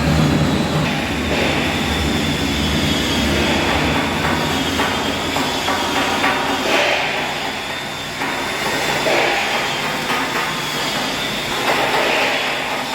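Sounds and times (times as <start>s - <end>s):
welding arc crackling and hissing: 0.0s - 12.9s.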